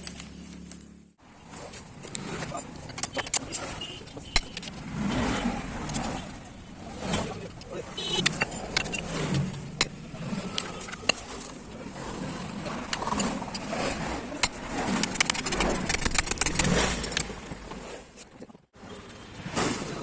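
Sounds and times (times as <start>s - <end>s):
metal parts and tools clinking: 2.1s - 11.7s, 12.8s - 17.4s
fast run of clicks: 12.7s - 17.4s.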